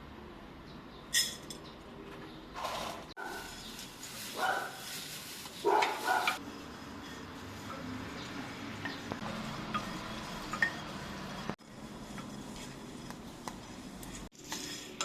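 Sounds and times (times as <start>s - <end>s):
sizzling in a metal pan: 3.4s - 15.0s.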